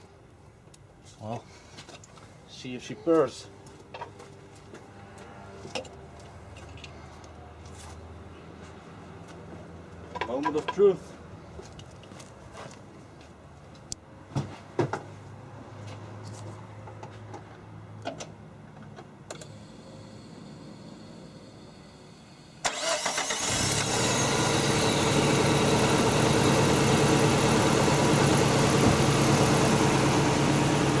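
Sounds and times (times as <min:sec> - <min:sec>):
car engine starting and idling: 0:19.4 - 0:31.0.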